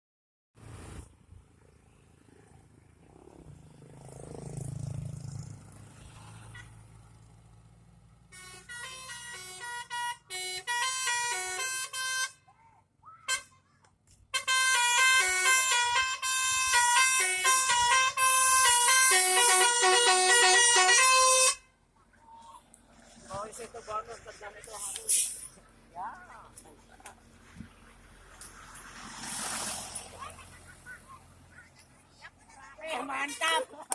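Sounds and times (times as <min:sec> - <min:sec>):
vehicle low rumble: 0:00.6 - 0:10.6, 0:20.8 - 0:33.9
multi-tone musical bus horn: 0:08.3 - 0:12.5, 0:13.3 - 0:13.5, 0:14.3 - 0:21.8.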